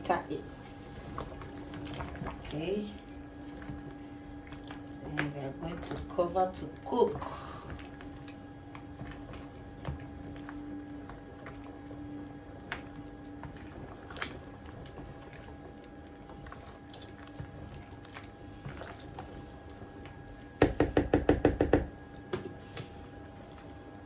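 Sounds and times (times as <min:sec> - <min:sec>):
faint steady hum: 0:00.0 - 0:24.0
rapid loud knocks: 0:20.6 - 0:21.9.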